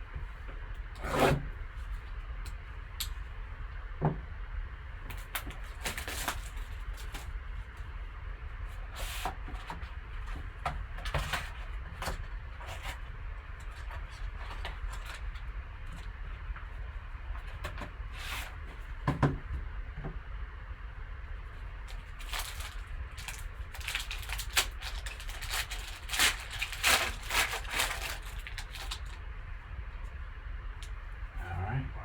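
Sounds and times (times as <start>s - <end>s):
steady low hum: 0.0s - 32.0s
cardboard and wrapper rustling: 5.6s - 7.3s, 21.9s - 29.2s.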